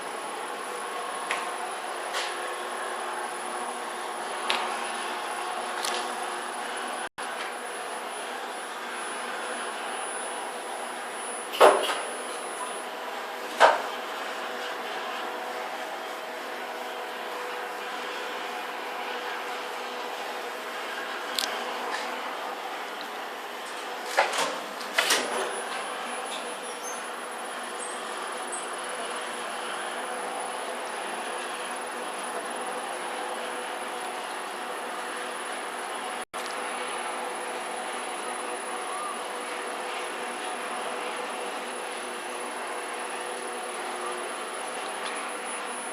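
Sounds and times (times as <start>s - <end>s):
elevator machinery hum and whir: 0.0s - 45.9s
thin high whine: 25.0s - 45.9s.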